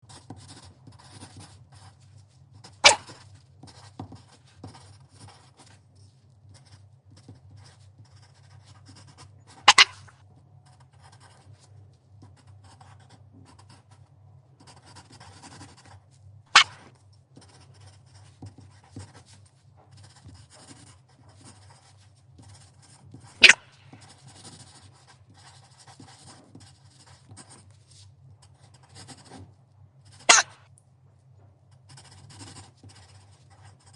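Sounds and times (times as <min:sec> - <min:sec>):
dog hiccupping: 0:09.7 - 0:10.0, 0:30.3 - 0:30.6.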